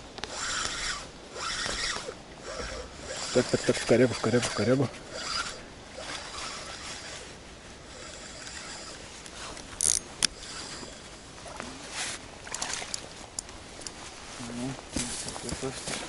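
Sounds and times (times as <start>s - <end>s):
outdoor noise: 0.0s - 16.0s
fishing reel whirring: 0.2s - 11.6s.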